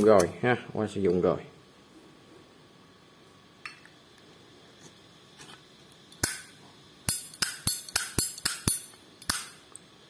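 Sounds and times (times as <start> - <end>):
lighter metallic clicks: 7.1 - 9.6.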